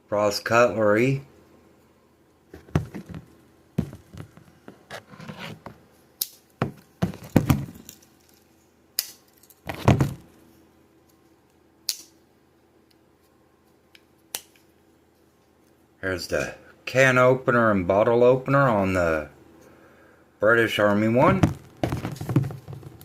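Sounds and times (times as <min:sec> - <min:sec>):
folding knives clicking and snapping: 0:09.0 - 0:09.6, 0:11.9 - 0:12.2.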